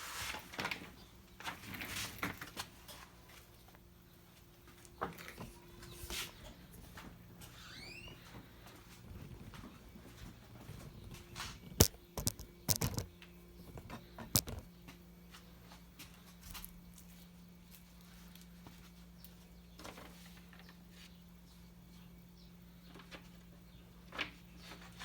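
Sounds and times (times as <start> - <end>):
steady low hum: 3.1 - 19.8
hard objects clicking and knocking: 11.6 - 13.1, 13.7 - 14.7.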